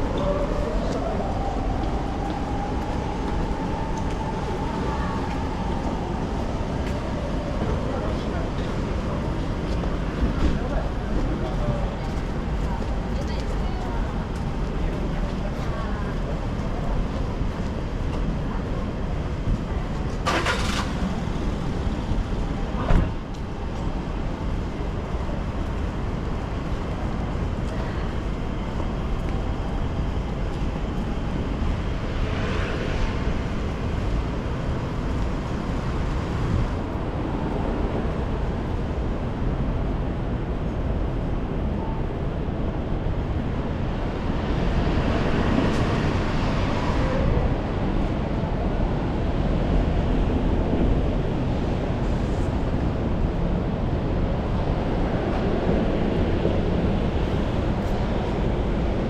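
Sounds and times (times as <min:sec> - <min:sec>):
low wind rumble: 0:00.0 - 0:59.0
rain: 0:00.0 - 0:59.0
road traffic: 0:00.0 - 0:59.0.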